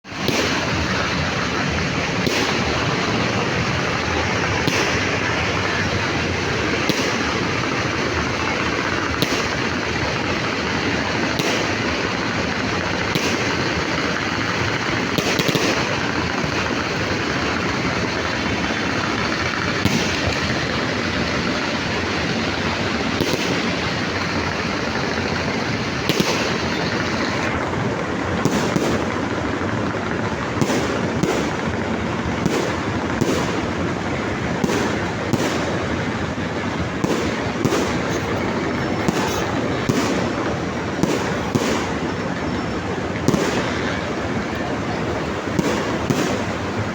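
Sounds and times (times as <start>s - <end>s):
firework bangs: 0.0s - 46.9s
fireworks crackling: 0.0s - 46.9s.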